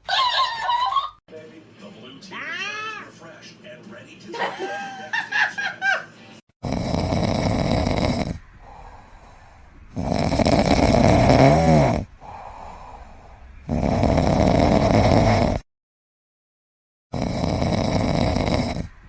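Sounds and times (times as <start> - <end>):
loud snoring: 6.6 - 15.7, 17.1 - 19.0.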